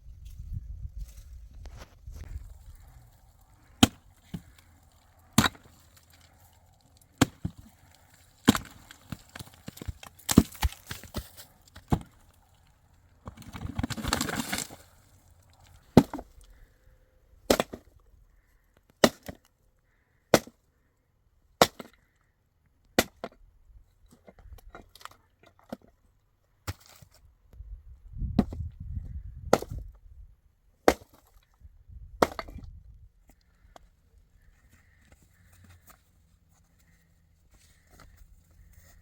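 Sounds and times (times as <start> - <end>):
rustling and shuffling: 34.4 - 39.0.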